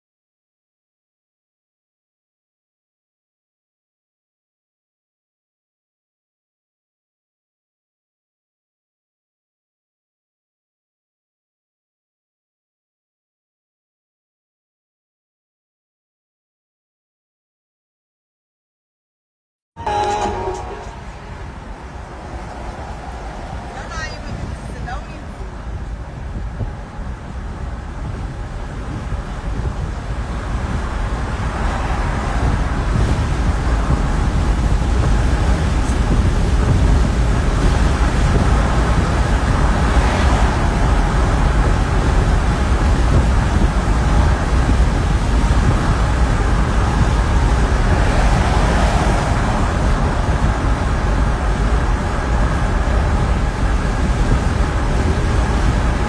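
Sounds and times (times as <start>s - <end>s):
car road and wind noise: 20.7s - 56.0s.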